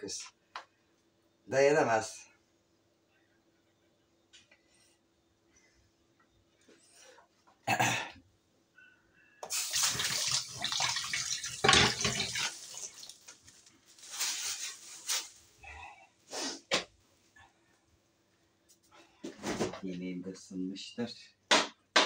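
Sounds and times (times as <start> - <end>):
water running from a tap: 9.4 - 13.4.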